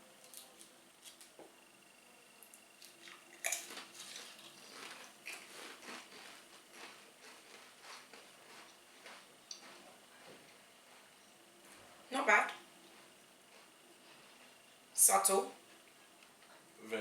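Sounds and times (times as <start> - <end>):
crunching chews: 2.4 - 7.0.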